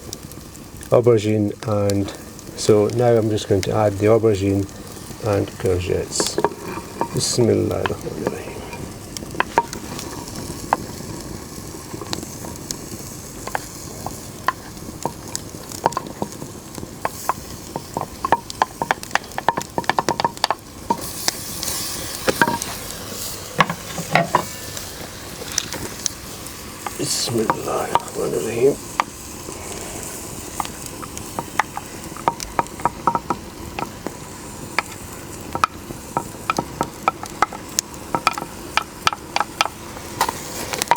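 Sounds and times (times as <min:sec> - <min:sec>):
vegetables sizzling in oil: 0:00.0 - 0:40.9
spoon scraping and knocking pot: 0:06.2 - 0:10.1, 0:30.6 - 0:33.9.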